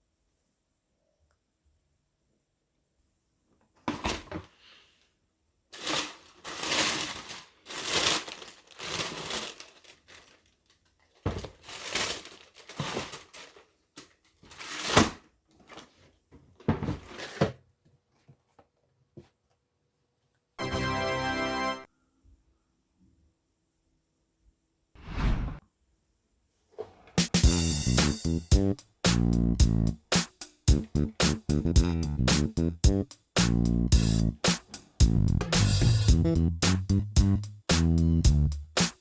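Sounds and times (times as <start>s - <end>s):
paper crinkling and rustling: 5.7s - 16.2s.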